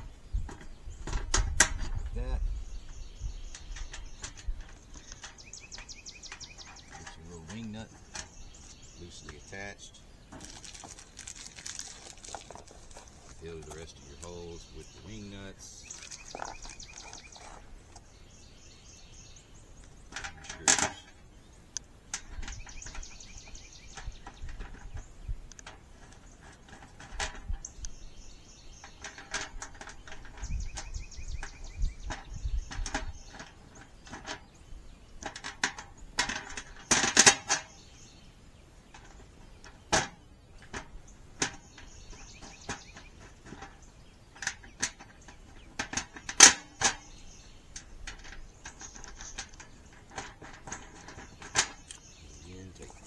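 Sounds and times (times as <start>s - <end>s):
metal clanks: 3.5s - 9.6s, 20.0s - 21.2s, 28.7s - 34.5s, 35.2s - 37.8s, 38.9s - 53.0s
screws clinking on metal panels: 3.5s - 10.6s, 19.8s - 21.2s, 28.8s - 30.8s, 44.4s - 53.0s.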